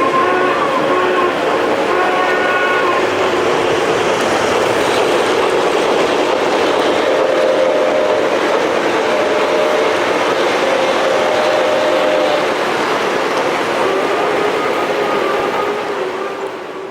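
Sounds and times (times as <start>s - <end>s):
model trains clattering on track: 0.0s - 16.9s
train horn chord: 0.0s - 16.9s.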